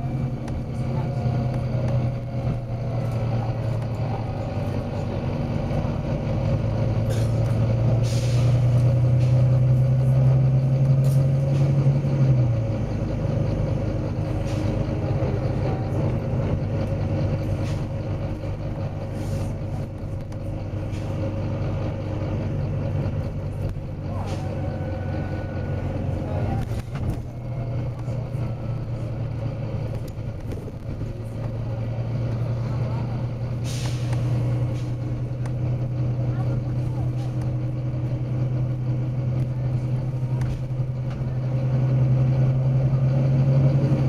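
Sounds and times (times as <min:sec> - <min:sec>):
bus diesel engine running: 0:00.0 - 0:44.0
air brake hisses: 0:08.0 - 0:09.4, 0:33.6 - 0:35.0.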